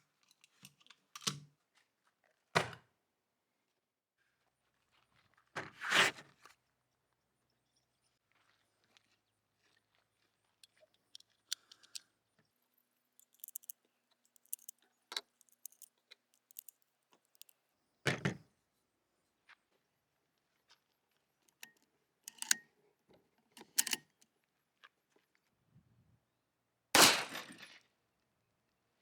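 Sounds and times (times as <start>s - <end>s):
metallic clicks of gun parts: 10.6s - 12.1s, 13.2s - 17.5s, 21.5s - 22.7s, 23.6s - 24.1s
metal parts clattering: 13.2s - 13.7s, 14.3s - 14.7s, 15.4s - 16.7s, 22.3s - 22.6s.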